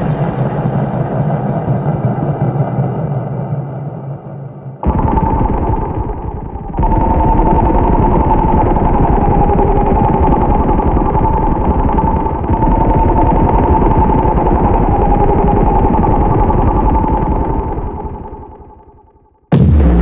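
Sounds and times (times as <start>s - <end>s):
dense rumbling noise texture: 19.5s - 20.0s.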